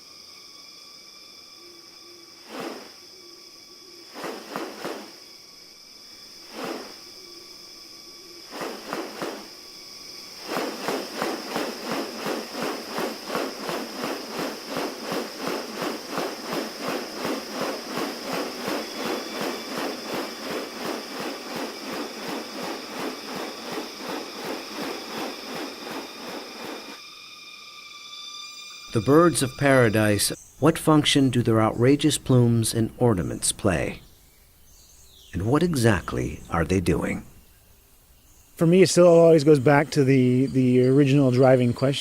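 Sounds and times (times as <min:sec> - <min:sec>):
high insect drone: 0:00.0 - 0:42.0
fast noisy pulses: 0:02.5 - 0:02.9, 0:04.1 - 0:05.2, 0:06.4 - 0:07.2, 0:08.4 - 0:27.0
noisy bursts: 0:10.2 - 0:27.0.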